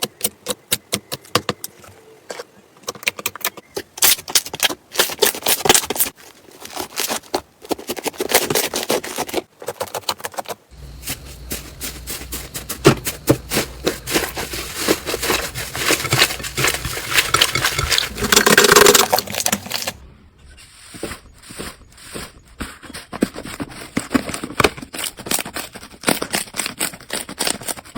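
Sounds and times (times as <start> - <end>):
slime crackling and popping: 10.8 - 20.0.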